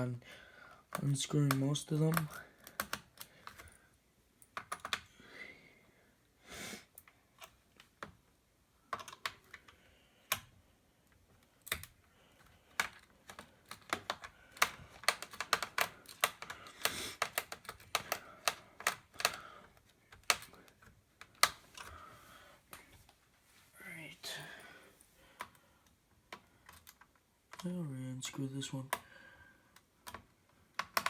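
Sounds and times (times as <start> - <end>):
screwdriver clicking on plastic: 11.6 - 22.0, 29.7 - 31.0.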